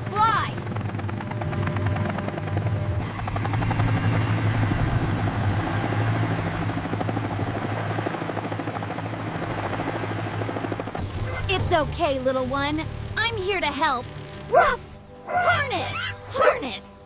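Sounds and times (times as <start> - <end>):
cartoon helicopter rotor chop: 1.6 - 15.0.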